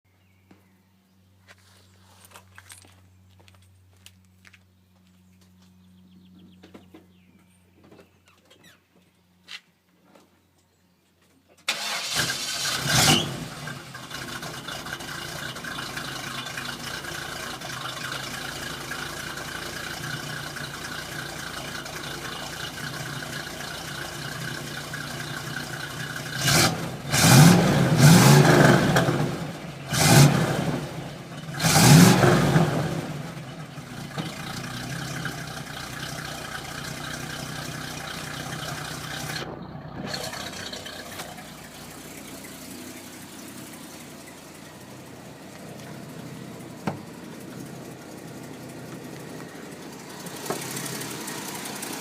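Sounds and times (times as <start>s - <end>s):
engine starting and revving: 11.7s - 45.1s.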